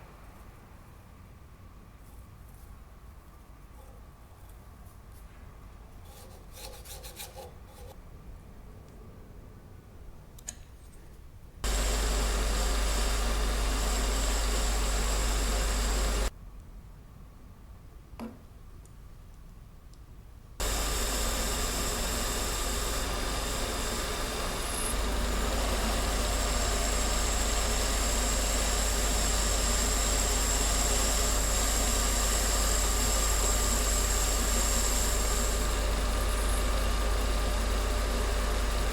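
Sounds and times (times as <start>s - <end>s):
machine tool cutting metal: 11.7s - 16.3s, 20.6s - 38.6s.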